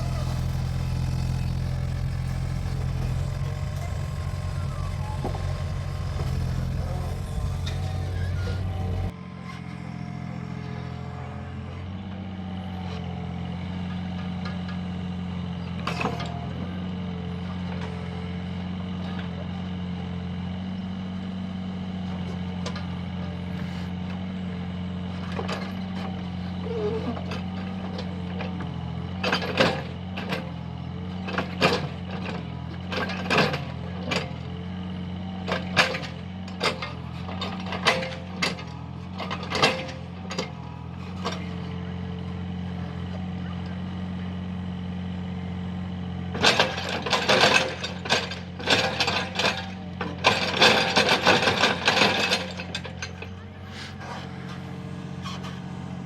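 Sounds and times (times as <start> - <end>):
excavator engine running: 0.0 - 14.4, 30.9 - 56.0.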